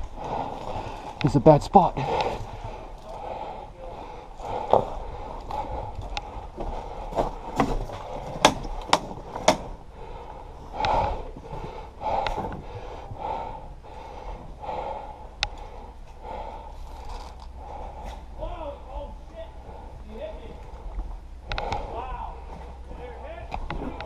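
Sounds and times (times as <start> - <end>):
heavy breathing: 0.0 - 1.2, 1.9 - 8.8, 9.6 - 18.4, 19.5 - 23.0.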